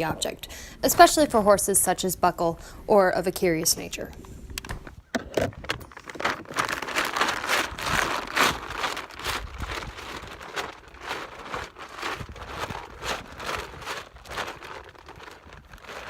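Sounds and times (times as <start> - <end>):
feed sack crinkling: 5.6 - 16.0.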